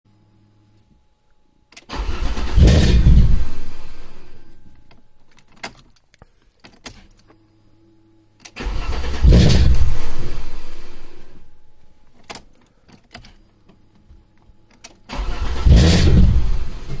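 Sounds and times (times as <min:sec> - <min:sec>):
car engine cranking and stalling: 0:01.8 - 0:04.4, 0:08.4 - 0:11.4, 0:15.1 - 0:17.0.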